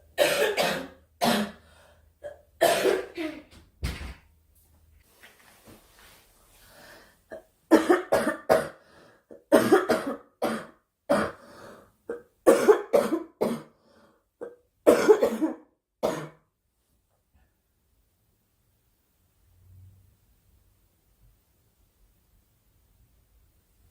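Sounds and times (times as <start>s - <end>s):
girl coughing: 0.2s - 1.6s, 2.2s - 3.5s, 7.3s - 8.8s, 9.4s - 11.4s, 12.1s - 13.7s, 14.9s - 16.4s.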